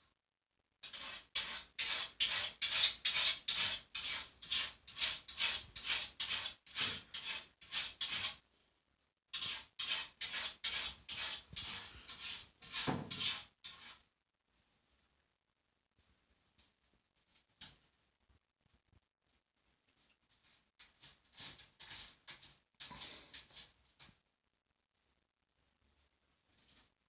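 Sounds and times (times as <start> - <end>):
cat scratching in litter: 0.8 - 8.4, 9.3 - 14.0, 21.2 - 23.7.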